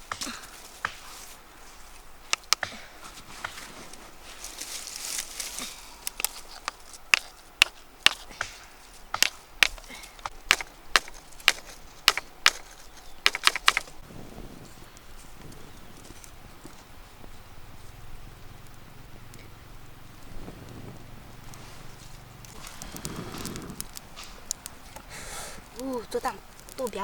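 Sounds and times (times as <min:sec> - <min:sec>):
chopping wood strikes: 0:02.3 - 0:03.6, 0:06.2 - 0:13.9.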